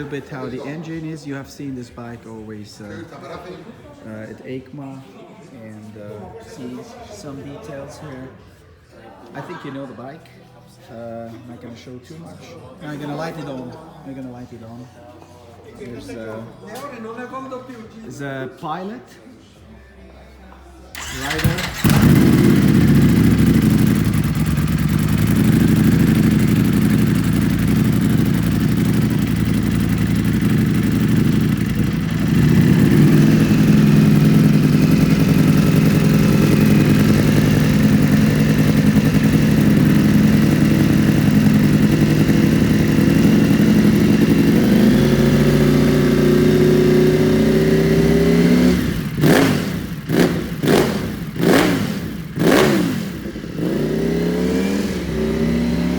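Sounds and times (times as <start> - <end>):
motorcycle engine idling: 21.0 - 55.9
motorcycle engine revving: 21.0 - 55.9.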